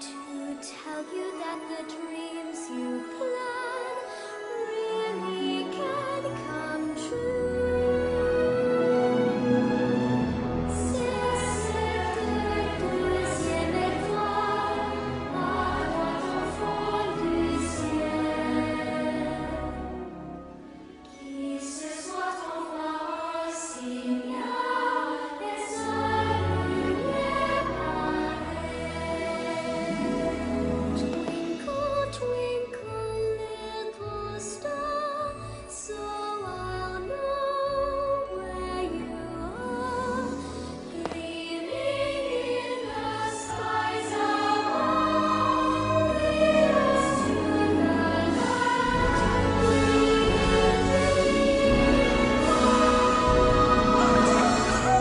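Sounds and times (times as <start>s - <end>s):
choir singing sustained lines: 0.0s - 32.9s, 39.4s - 55.0s
orchestral soundtrack: 0.0s - 55.0s
deep bass: 48.8s - 55.0s.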